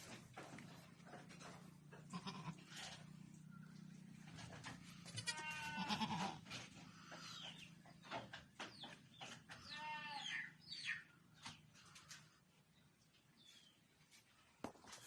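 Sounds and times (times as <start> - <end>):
goat kids bleating: 2.0 - 3.1, 4.9 - 6.5, 9.6 - 10.6.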